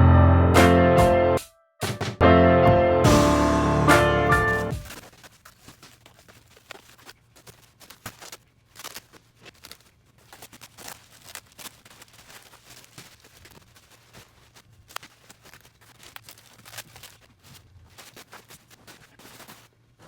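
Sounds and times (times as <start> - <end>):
piano music: 0.0 - 4.9
faint clicks and rustles: 4.8 - 20.0.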